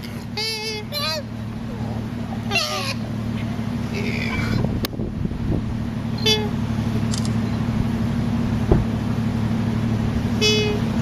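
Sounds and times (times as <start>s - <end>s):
car engine droning: 0.0s - 11.0s
high squeaky calls: 0.4s - 4.6s.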